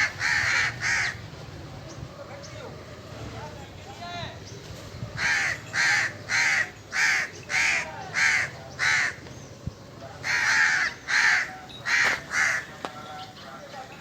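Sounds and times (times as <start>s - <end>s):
harsh caw-like bird calls: 0.0s - 1.4s, 5.1s - 9.5s, 10.2s - 13.3s.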